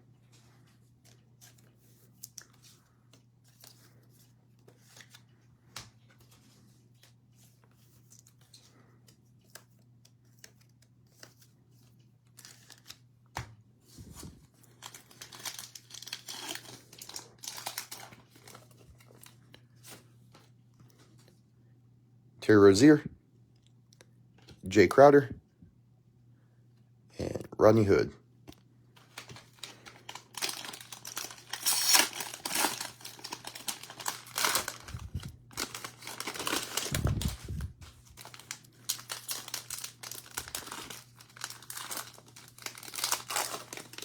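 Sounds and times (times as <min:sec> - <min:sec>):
faint electrical hum: 0:00.0 - 0:44.0
cellophane wrapper tearing and crinkling: 0:14.6 - 0:19.3, 0:29.0 - 0:44.0.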